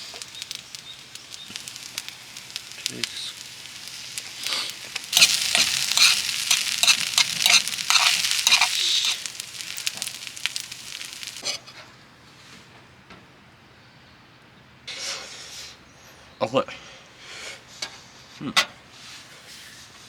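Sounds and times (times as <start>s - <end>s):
food sizzling in a pan: 0.0s - 11.6s.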